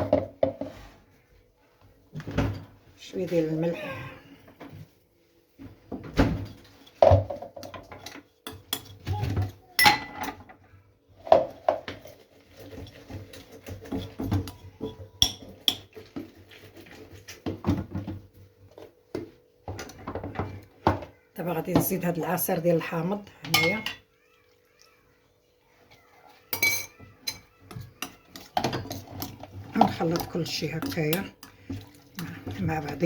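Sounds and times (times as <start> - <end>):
utensils and dishes clinking: 6.8 - 10.6, 11.2 - 18.2, 23.5 - 24.2, 26.3 - 33.0.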